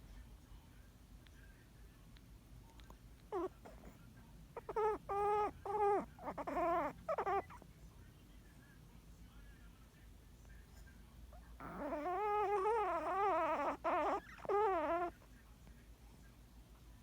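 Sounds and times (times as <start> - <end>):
dog snoring: 3.3 - 4.0, 4.6 - 7.6, 11.6 - 15.2
dog squealing: 3.3 - 4.0, 4.6 - 7.6, 11.6 - 15.1.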